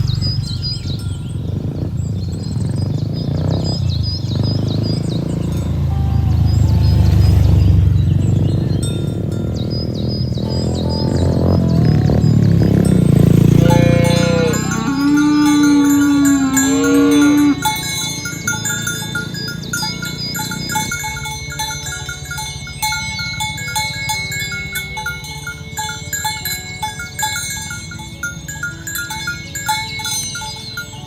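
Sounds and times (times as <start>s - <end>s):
bell-like chiming: 4.6s - 31.0s
cow mooing: 10.4s - 21.0s.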